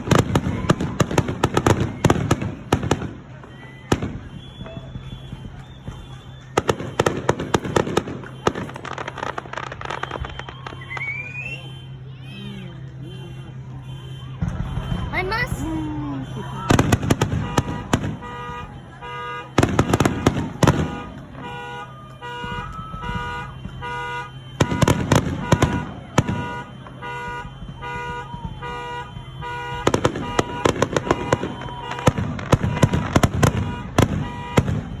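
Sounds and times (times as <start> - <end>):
fireworks bangs and crackles: 0.0 - 35.0
gliding whistle: 9.8 - 11.7.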